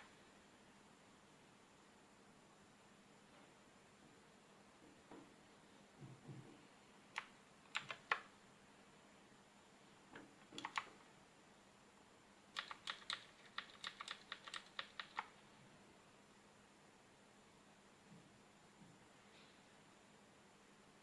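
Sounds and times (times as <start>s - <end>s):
mechanical keyboard keystrokes: 7.2s - 8.2s, 10.4s - 10.9s, 12.6s - 15.3s.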